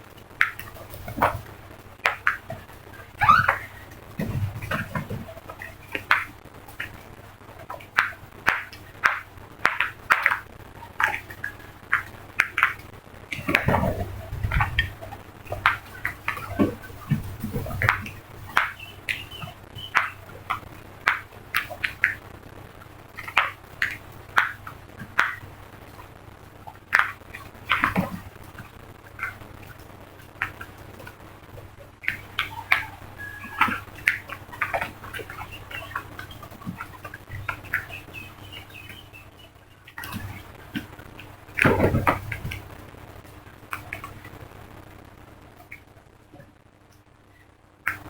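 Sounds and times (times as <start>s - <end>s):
crows cawing: 32.4s - 33.9s.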